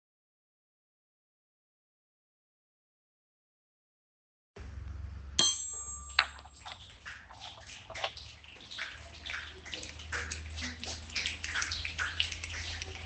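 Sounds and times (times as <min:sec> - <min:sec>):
ringing metallic ping: 0:05.4 - 0:06.6
rain dripping and tapping: 0:06.2 - 0:13.0.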